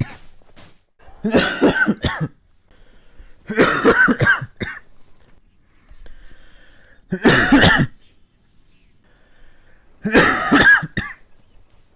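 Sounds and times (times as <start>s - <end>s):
person coughing: 1.2s - 2.4s, 3.5s - 4.9s, 7.1s - 8.0s, 10.0s - 11.2s.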